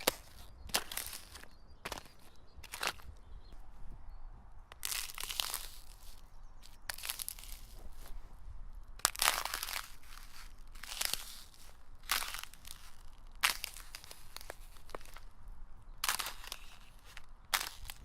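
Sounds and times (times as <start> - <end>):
footsteps cracking thin ice: 0.0 - 3.3, 4.7 - 8.2, 8.8 - 18.0.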